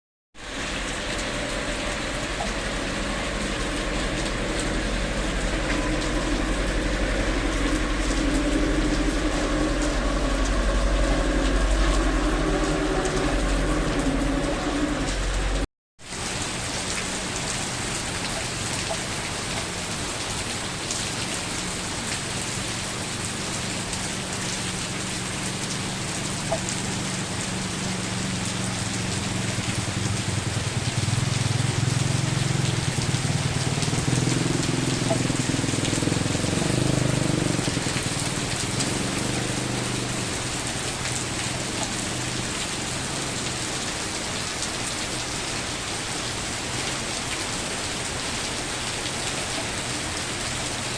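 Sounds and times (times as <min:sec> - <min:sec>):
low rumble: 0:00.4 - 0:15.7
heavy rain falling: 0:00.4 - 0:50.9.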